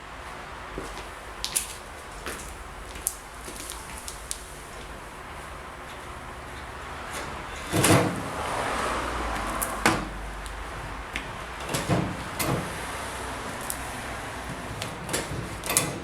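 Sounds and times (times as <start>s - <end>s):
machine clunks: 7.2s - 8.4s, 11.2s - 12.9s.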